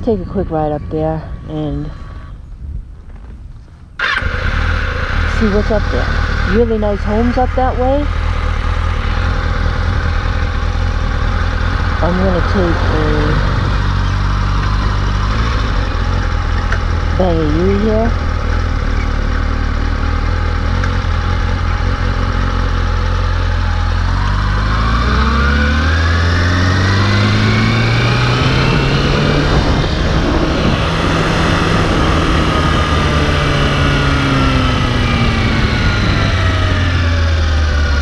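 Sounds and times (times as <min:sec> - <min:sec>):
motorcycle engine revving: 0:04.0 - 0:38.0.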